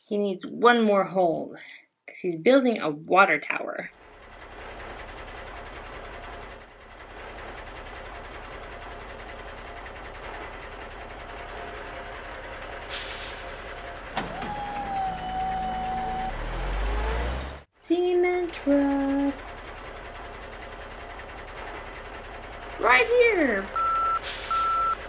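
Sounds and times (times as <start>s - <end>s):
toy truck engine hum: 14.1s - 17.6s
click: 14.2s - 16.4s.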